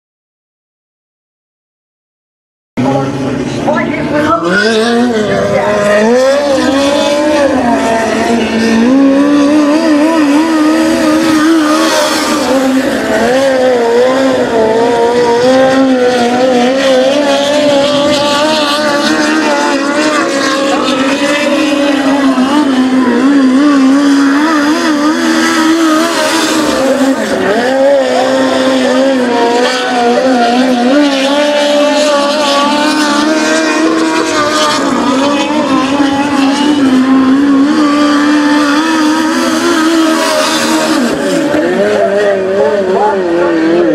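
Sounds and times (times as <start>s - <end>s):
race car engine revving: 2.8s - 43.9s.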